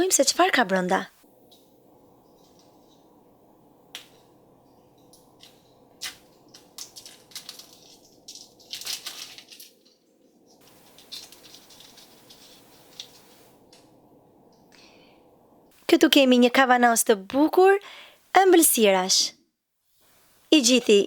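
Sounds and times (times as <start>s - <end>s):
packaging clicking and crinkling: 5.4s - 13.3s.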